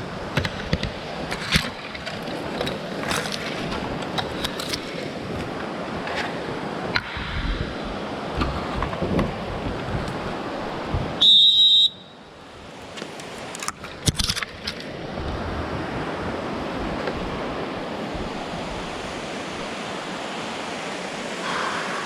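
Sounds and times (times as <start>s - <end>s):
shrill whistle-like tone: 11.2s - 12.2s
rapids rushing: 14.8s - 22.0s.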